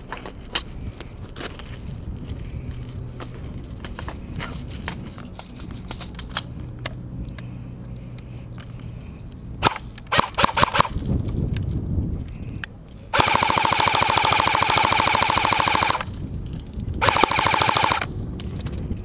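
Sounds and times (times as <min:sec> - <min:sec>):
airsoft guns firing: 0:09.6 - 0:11.0, 0:13.1 - 0:16.1, 0:17.0 - 0:18.1.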